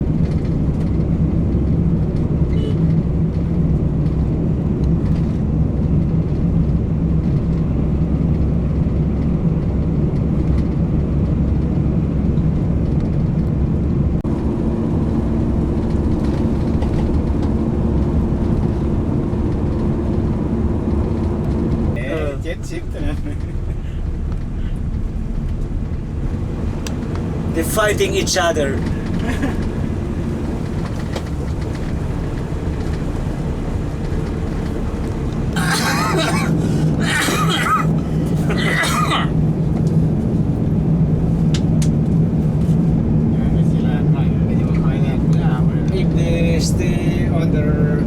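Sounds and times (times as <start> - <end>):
motor droning: 14.3 - 22.0, 23.5 - 37.0.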